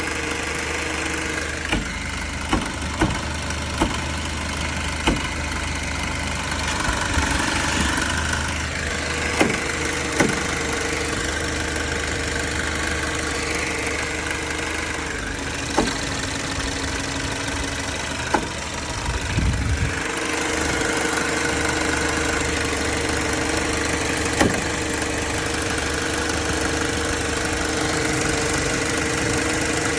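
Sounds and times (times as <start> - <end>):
car engine idling: 0.0 - 29.9
sharp engine knock: 1.6 - 5.6, 9.1 - 11.3, 14.4 - 19.5, 23.3 - 26.8.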